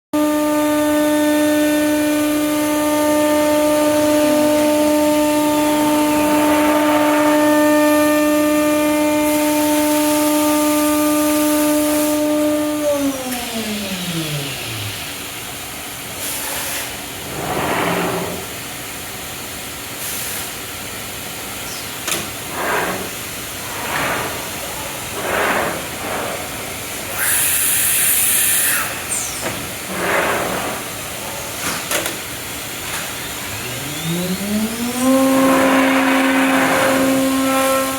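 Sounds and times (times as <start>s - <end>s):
router spindle high whine: 0.2s - 15.7s, 27.1s - 29.7s, 32.9s - 37.9s.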